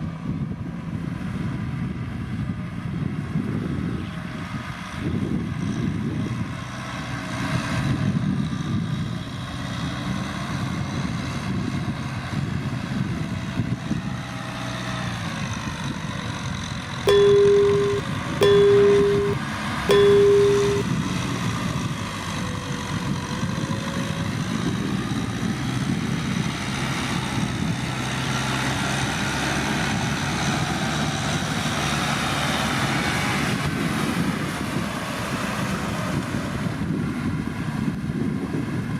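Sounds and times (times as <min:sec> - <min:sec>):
horn blasts: 0:17.1 - 0:20.8.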